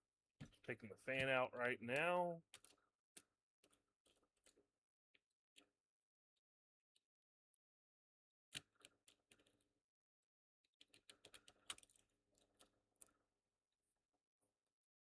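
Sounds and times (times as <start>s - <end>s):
small plastic parts clicking: 1.9s - 5.8s, 8.5s - 9.8s, 10.6s - 13.3s.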